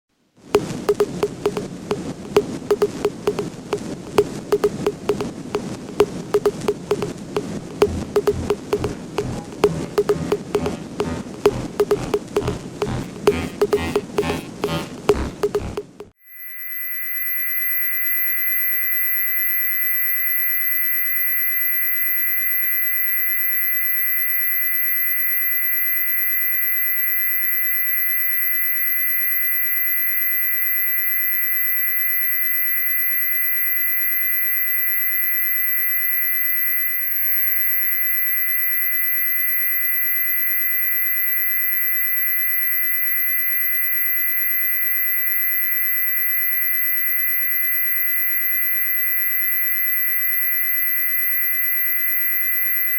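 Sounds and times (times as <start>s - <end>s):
lower steady electronic tones: 0.8s - 3.5s, 4.1s - 5.3s, 5.9s - 7.1s, 7.7s - 17.5s.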